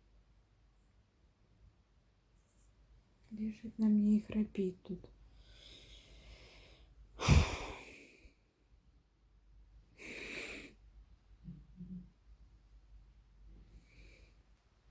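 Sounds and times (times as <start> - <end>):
cat hissing breath: 5.3 - 8.4, 10.0 - 10.8.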